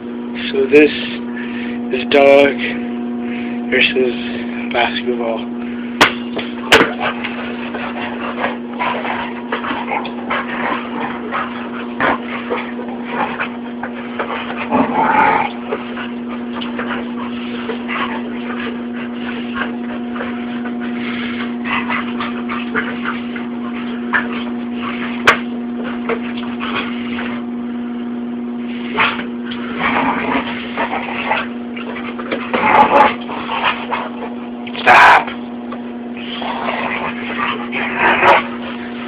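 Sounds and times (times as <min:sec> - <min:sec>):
steady low hum: 0:00.0 - 0:39.0
dog growling: 0:00.7 - 0:39.0
dog teeth scraping a ball: 0:06.0 - 0:27.4.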